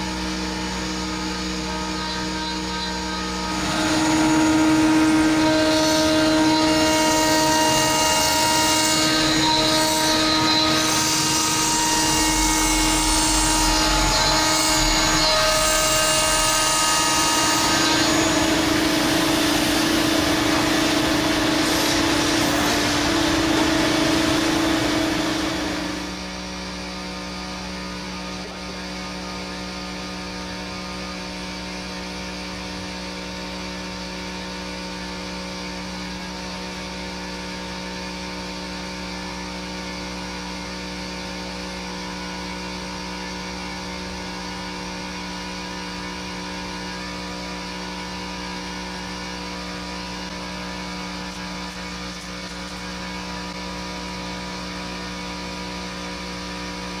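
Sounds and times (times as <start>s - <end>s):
cnc router humming: 0.0s - 26.7s.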